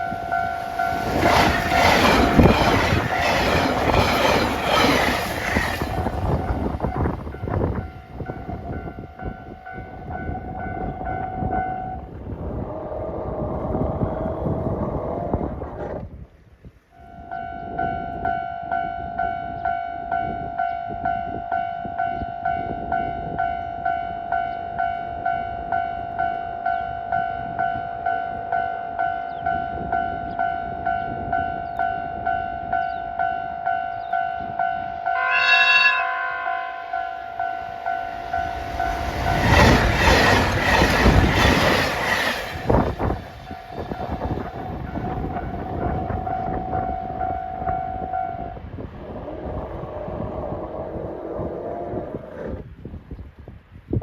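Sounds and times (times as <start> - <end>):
train rumbling past: 0.0 - 15.8, 33.7 - 51.6
train horn: 34.0 - 41.5.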